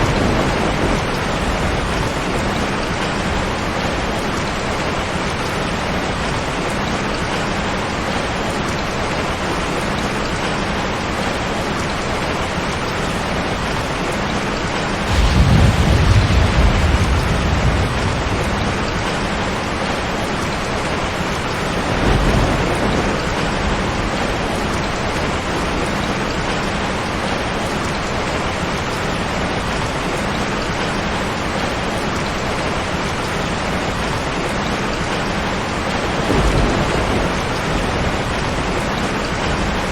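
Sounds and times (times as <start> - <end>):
low rumble of thunder: 0.0 - 6.5, 15.0 - 27.7, 35.7 - 39.9
heavy rain on a tin roof: 0.0 - 39.9.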